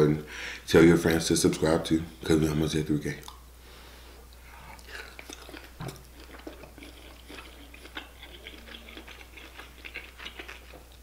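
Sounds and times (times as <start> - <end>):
close eating and chewing: 4.3 - 11.0.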